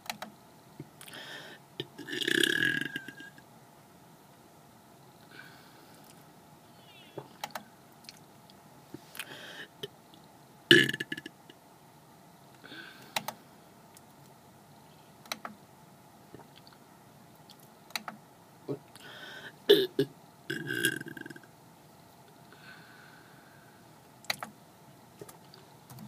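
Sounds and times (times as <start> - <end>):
person belching: 1.8 - 3.4, 10.7 - 11.3, 19.7 - 21.5
small clicks: 24.2 - 24.5.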